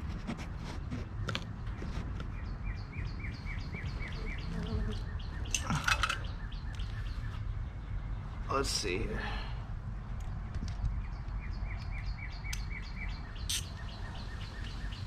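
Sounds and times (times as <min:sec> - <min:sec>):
bird chirping: 0:01.1 - 0:09.0, 0:10.7 - 0:15.0.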